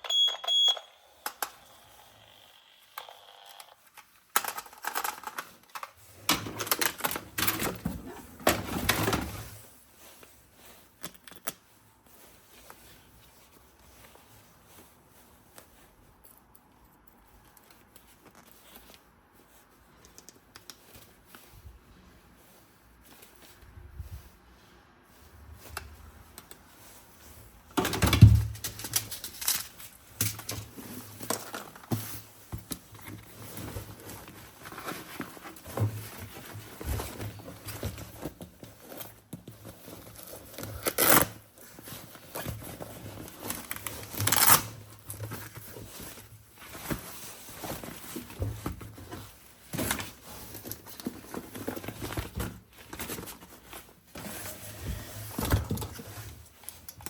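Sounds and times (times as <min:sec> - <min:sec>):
packaging crinkling and rustling: 0:01.2 - 0:21.6, 0:25.1 - 0:57.0
plastic parts clicking and knocking: 0:02.9 - 0:09.4, 0:27.7 - 0:33.3.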